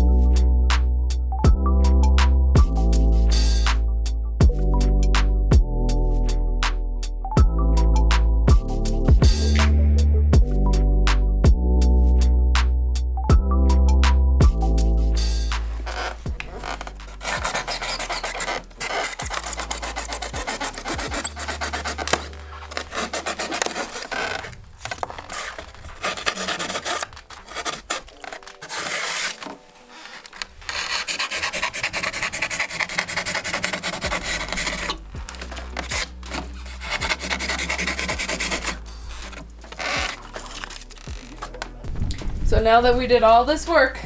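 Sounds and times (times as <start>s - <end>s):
foam board being rasped: 15.2s - 41.7s.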